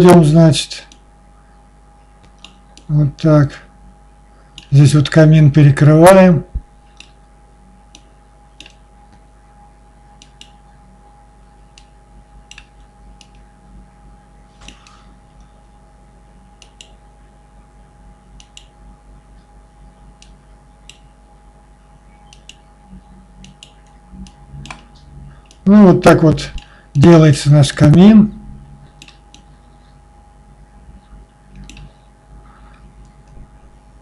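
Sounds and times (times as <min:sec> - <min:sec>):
low electrical hum: 0:00.0 - 0:34.0
computer mouse and keyboard clicks: 0:07.9 - 0:08.8, 0:12.5 - 0:13.4, 0:23.4 - 0:25.6, 0:31.5 - 0:32.0.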